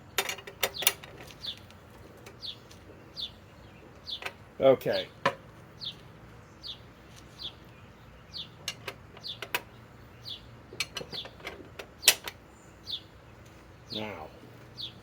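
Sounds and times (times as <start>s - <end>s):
bird chirping: 0.0s - 15.0s
sharp clicks and knocks: 0.2s - 2.8s, 8.6s - 9.7s, 10.7s - 12.4s.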